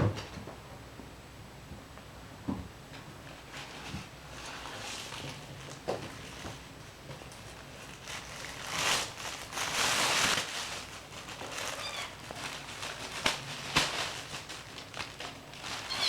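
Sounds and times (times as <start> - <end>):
kittens scuffling: 3.4 - 16.0.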